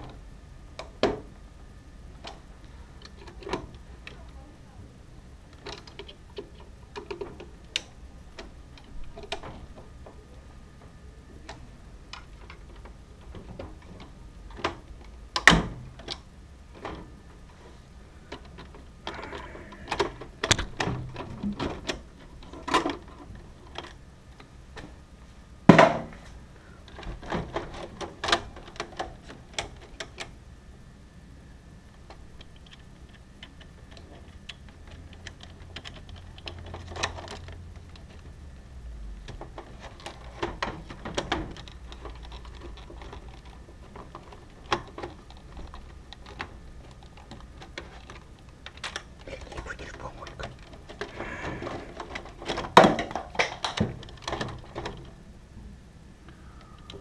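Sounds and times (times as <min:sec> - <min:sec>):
faint steady hum: 0:00.0 - 0:57.0.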